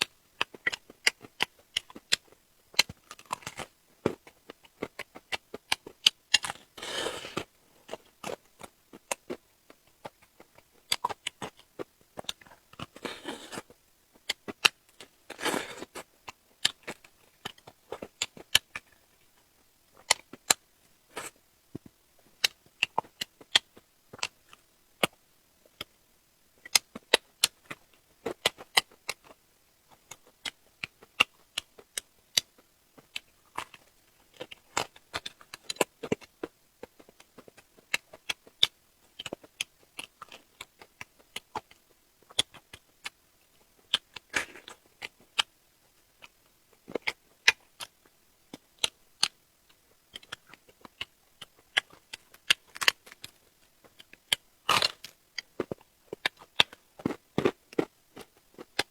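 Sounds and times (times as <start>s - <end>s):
person eating crunchy food: 6.3s - 7.5s, 12.2s - 13.7s, 15.3s - 16.0s, 44.2s - 44.8s, 54.6s - 57.9s.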